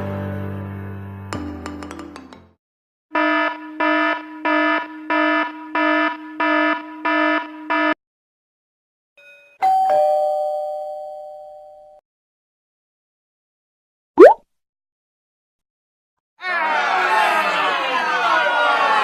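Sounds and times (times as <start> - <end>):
electronic doorbell buzzing ring: 9.2 - 12.0.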